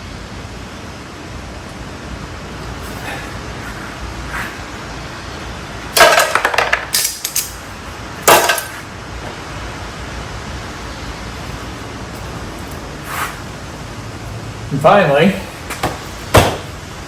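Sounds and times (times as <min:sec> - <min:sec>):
metal tools clattering: 0:06.0 - 0:08.9
sharp metallic clank: 0:08.2 - 0:08.8.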